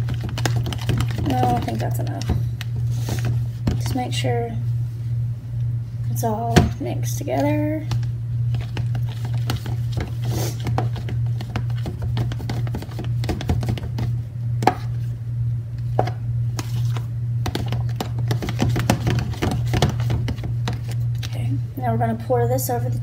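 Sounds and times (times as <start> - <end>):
spoon stirring thick mixture: 0.0 - 3.9, 7.9 - 14.2, 16.0 - 21.3
steady low hum: 0.0 - 23.0.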